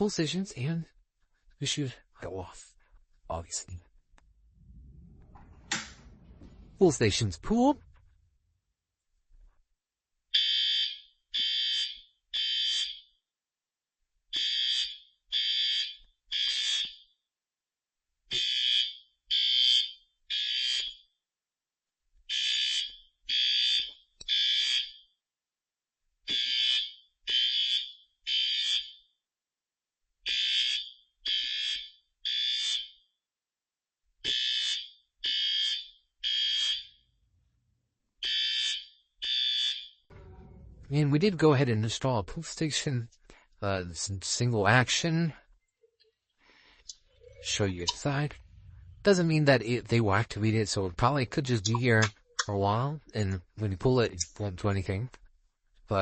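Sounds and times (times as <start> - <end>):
fire alarm horn blasts: 10.3 - 13.0, 14.3 - 17.0, 18.3 - 21.0, 22.3 - 25.0, 26.3 - 29.0, 30.3 - 32.9, 34.3 - 37.0, 38.2 - 40.8.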